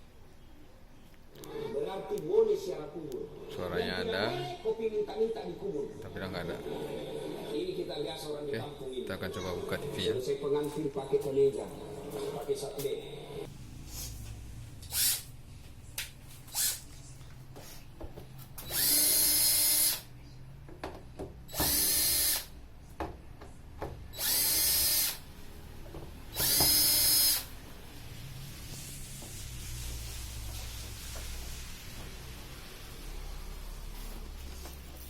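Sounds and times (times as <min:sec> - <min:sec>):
electric screwdriver running: 0:14.9 - 0:15.3, 0:16.5 - 0:16.8, 0:18.6 - 0:20.1, 0:21.5 - 0:22.5, 0:24.2 - 0:25.2, 0:26.3 - 0:27.5.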